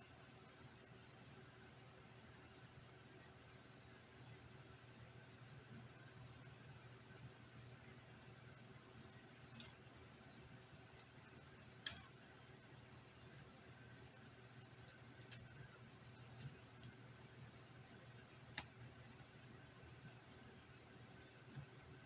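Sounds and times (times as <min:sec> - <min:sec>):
steady low hum: 0:00.0 - 0:22.0
small clicks and taps: 0:09.0 - 0:12.4, 0:13.1 - 0:13.8, 0:14.6 - 0:17.0, 0:17.8 - 0:19.4.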